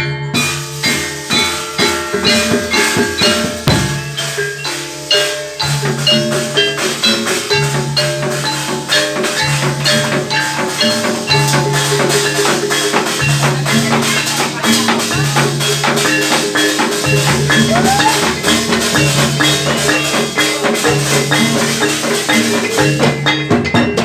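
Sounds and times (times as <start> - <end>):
gamelan ensemble playing: 0.0 - 24.0.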